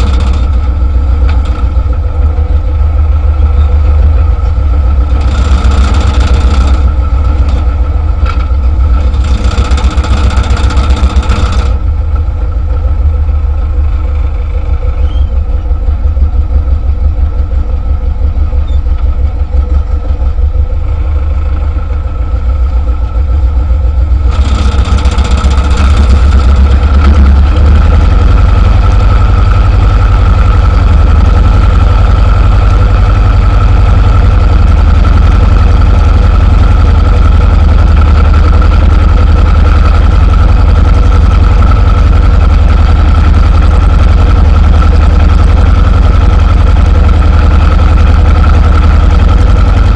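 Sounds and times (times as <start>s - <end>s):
steady whine: 0.0s - 49.9s
tractor diesel engine throbbing: 0.0s - 49.9s.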